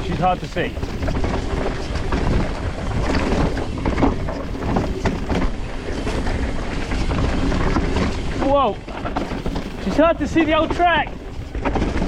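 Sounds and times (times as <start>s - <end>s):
bike knocks and rattles: 0.0s - 12.0s
bike tyre noise on dirt: 0.0s - 12.0s
wind rushing over microphone: 0.0s - 12.0s.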